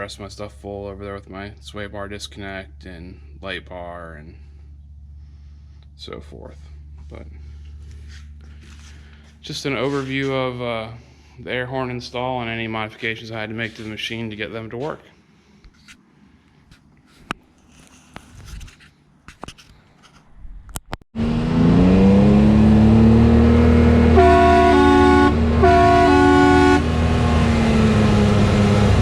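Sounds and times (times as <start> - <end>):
vehicle engine running: 0.0 - 10.7, 21.2 - 29.0
air horn blasts: 23.0 - 28.1.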